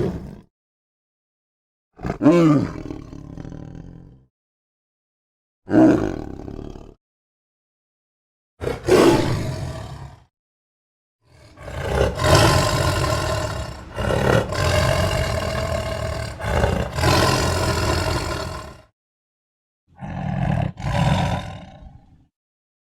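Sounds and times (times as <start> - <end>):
tiger roaring: 2.0 - 4.2, 5.7 - 7.0, 8.6 - 10.3, 11.3 - 18.9, 19.9 - 22.3.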